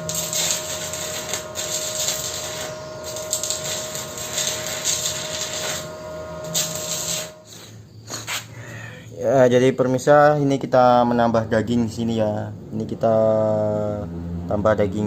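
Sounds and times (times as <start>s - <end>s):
electric arc welding crackle: 0.0s - 8.5s
thin steady whine: 0.0s - 9.2s.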